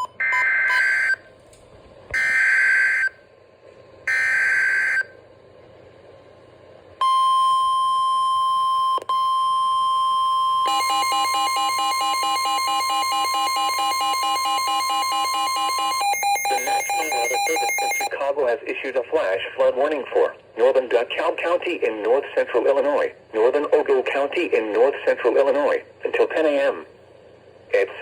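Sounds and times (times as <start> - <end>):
pulsing two-tone attention signal: 10.2 - 18.1.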